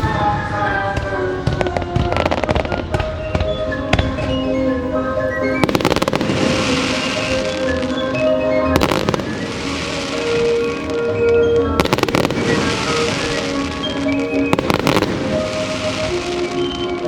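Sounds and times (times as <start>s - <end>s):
fireworks bangs: 0.0s - 17.0s
fireworks crackling: 0.0s - 17.0s
show music: 0.0s - 17.0s
firework hiss: 5.6s - 8.1s, 8.8s - 11.0s, 11.8s - 17.0s.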